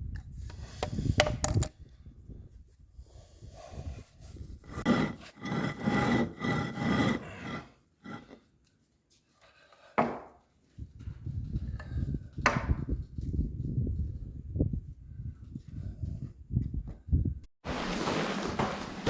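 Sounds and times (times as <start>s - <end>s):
rasping strokes on wood: 4.8s - 8.3s.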